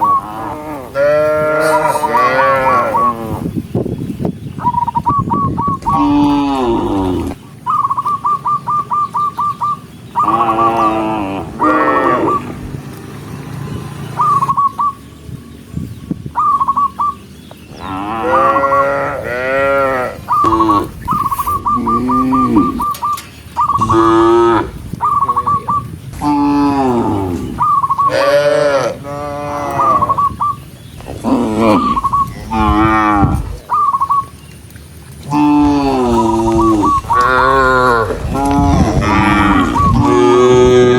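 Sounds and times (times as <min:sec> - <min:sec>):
cattle mooing: 0:00.0 - 0:03.4, 0:10.2 - 0:12.6, 0:17.8 - 0:23.1, 0:23.7 - 0:24.8, 0:26.2 - 0:30.2, 0:31.0 - 0:33.6, 0:35.2 - 0:40.9.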